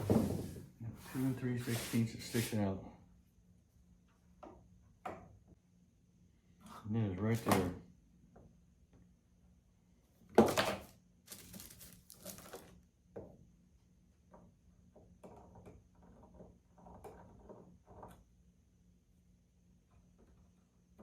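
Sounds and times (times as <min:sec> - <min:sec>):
wood scraping: 0:00.0 - 0:02.5.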